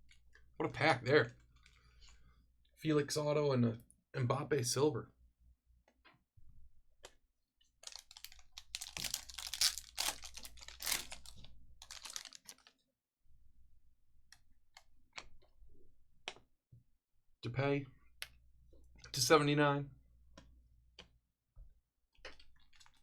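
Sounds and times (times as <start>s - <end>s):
card pack crinkling and tearing: 7.8s - 12.8s.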